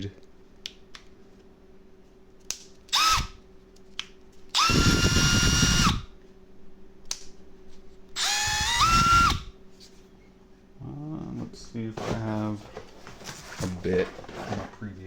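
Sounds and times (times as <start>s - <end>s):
cordless drill motor whining: 2.9s - 3.4s, 4.5s - 6.1s, 8.2s - 9.5s.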